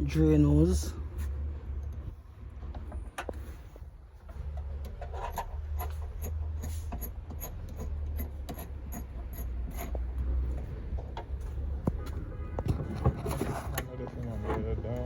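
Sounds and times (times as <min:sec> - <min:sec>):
tools clicking and scraping: 0:04.3 - 0:11.4.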